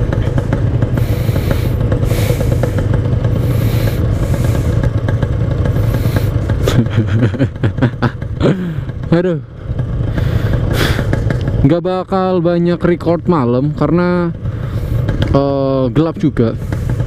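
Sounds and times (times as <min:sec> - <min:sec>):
engine revving: 0:00.0 - 0:17.0
two-stroke motorcycle engine: 0:00.0 - 0:17.0
rushing hiss passes: 0:01.0 - 0:04.9.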